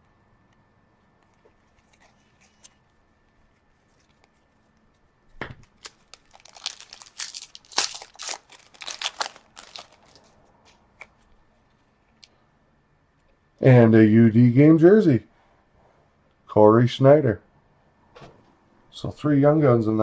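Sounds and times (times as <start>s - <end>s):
card pack wrapper crinkling: 5.6s - 10.4s.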